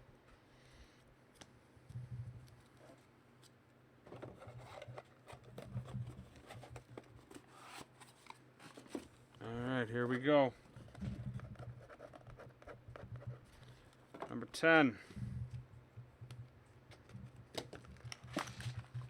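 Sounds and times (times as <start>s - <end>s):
cards rustling and clicking: 16.9s - 19.0s.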